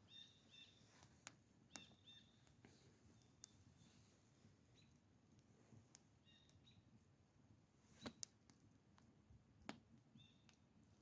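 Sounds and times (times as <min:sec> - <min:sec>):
faint high chirps: 0:06.2 - 0:06.8
faint sharp clicks: 0:08.0 - 0:09.8.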